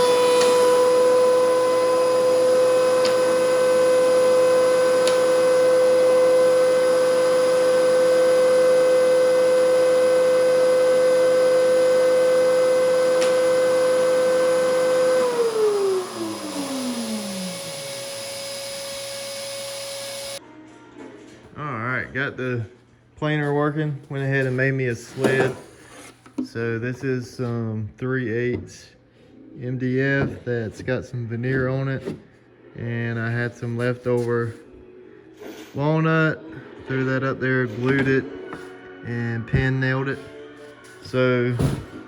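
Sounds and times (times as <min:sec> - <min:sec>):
machine hum: 0:00.0 - 0:20.4
thickness planer running: 0:00.0 - 0:20.4.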